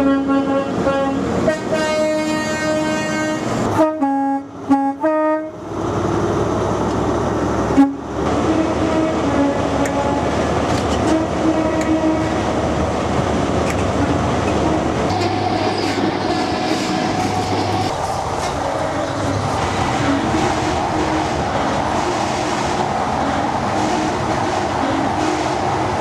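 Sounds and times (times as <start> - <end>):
train wheels clattering on rails: 5.9 - 26.0.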